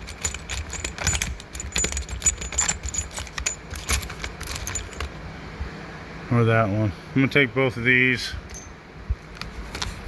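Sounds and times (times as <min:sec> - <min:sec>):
small metal tools clinking: 0:00.0 - 0:05.2, 0:08.5 - 0:08.8.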